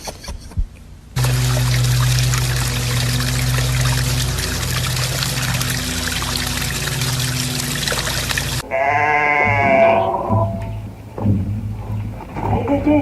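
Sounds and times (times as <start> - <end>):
low hum: 1.1 - 8.6
running water rushing: 1.2 - 8.6.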